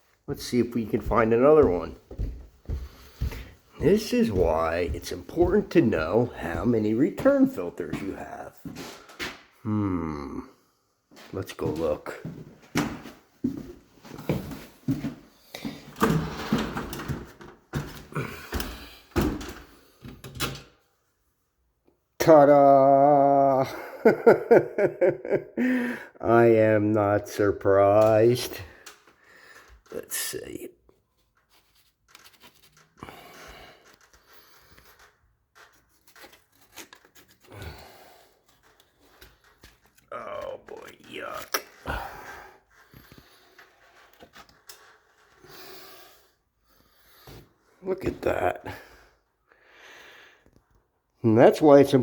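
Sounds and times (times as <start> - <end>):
footsteps thumping: 0.9 - 9.3
door opening: 15.7 - 20.7.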